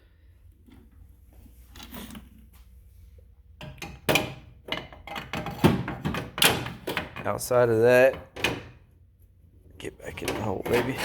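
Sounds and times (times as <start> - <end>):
metal tools clanking in drawer: 10.1 - 11.0.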